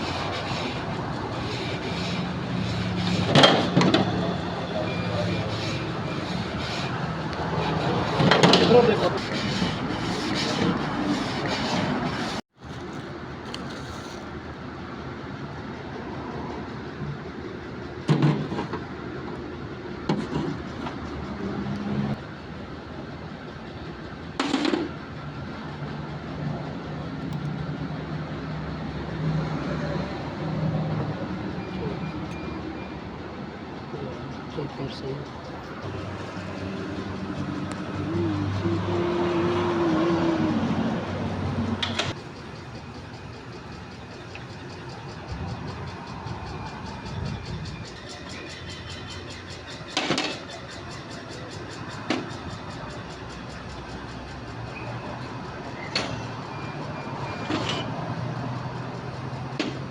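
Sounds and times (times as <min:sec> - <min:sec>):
engine humming: 0:00.0 - 0:59.9
sharp metallic knocks: 0:48.3 - 0:50.7.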